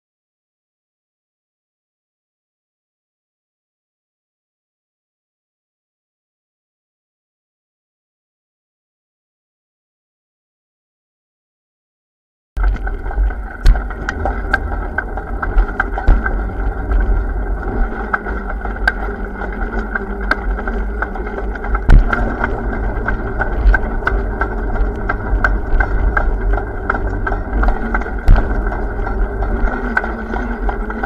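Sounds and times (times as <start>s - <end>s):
road noise: 12.6s - 31.0s
wind rumbling on microphone: 12.6s - 31.0s.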